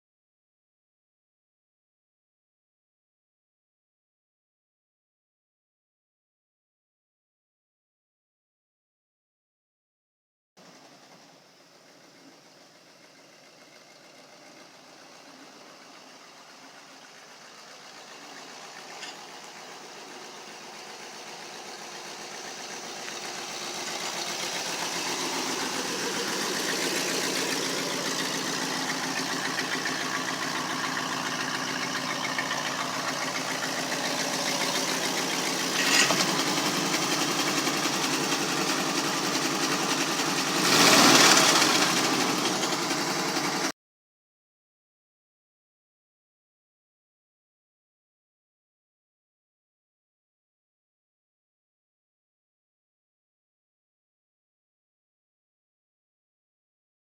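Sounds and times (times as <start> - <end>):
engine running steadily: 10.6 - 43.7.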